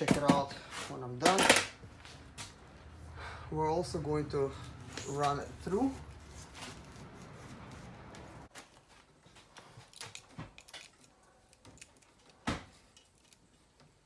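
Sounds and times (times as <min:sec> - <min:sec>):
cable clicks and rustles: 0:08.1 - 0:14.0.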